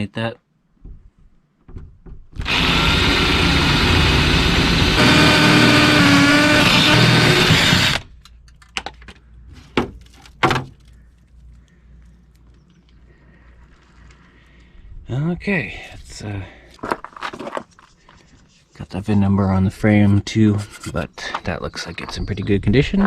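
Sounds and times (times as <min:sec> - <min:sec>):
electric power tool running: 0:02.4 - 0:08.1.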